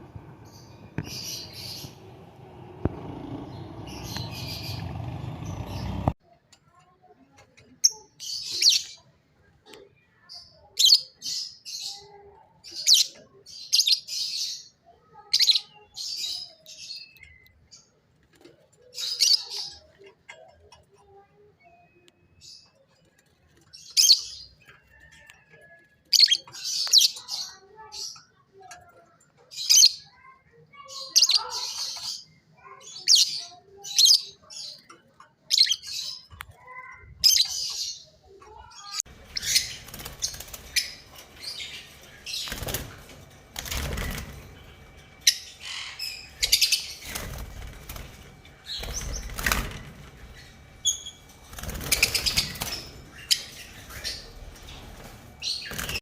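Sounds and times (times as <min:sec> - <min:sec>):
lovebirds chirping: 0:00.0 - 0:06.2, 0:35.5 - 0:56.0
wings flapping: 0:00.1 - 0:06.2, 0:39.1 - 0:45.3, 0:46.4 - 0:56.0.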